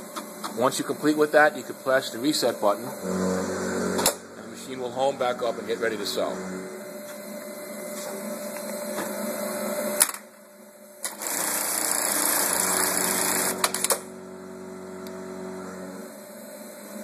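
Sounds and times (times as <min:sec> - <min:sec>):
steady electrical hum: 0:00.0 - 0:11.0, 0:12.0 - 0:16.4
machine motors whirring: 0:03.0 - 0:07.2, 0:12.0 - 0:16.1.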